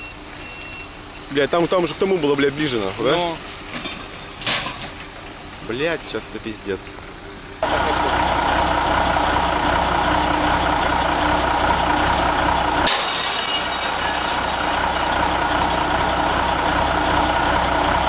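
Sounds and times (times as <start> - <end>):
heavy vehicle engine humming: 0.0 - 18.0
lighter engine with high whines: 5.0 - 12.8.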